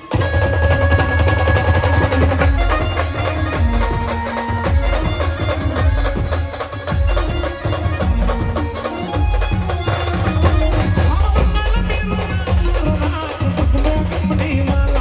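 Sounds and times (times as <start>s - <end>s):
heavy bass drum: 0.1s - 15.0s.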